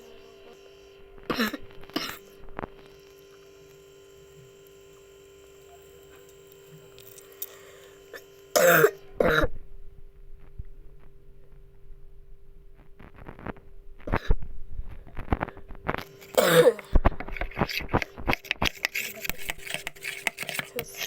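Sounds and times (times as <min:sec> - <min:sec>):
person coughing: 0:01.3 - 0:02.3, 0:08.6 - 0:09.6, 0:16.3 - 0:17.0.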